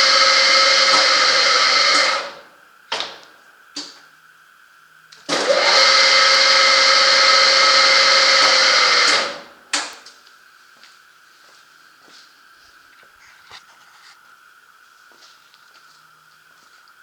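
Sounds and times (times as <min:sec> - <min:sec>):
lathe spindle gear whine: 0:00.0 - 0:02.8, 0:04.3 - 0:09.7.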